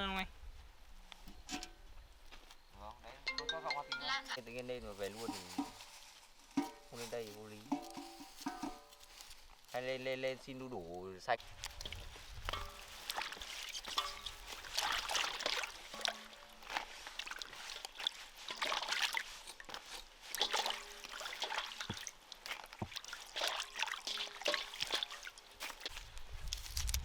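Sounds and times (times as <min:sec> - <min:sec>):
water trickling and sloshing: 0:04.9 - 0:09.7, 0:11.4 - 0:27.0.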